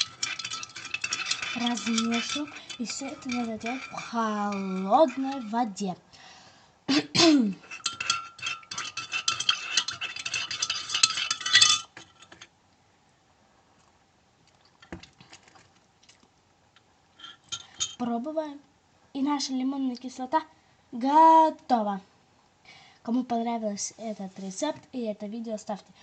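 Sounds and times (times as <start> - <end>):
teaspoon clinking against cup: 0.0 - 5.5, 7.6 - 12.4.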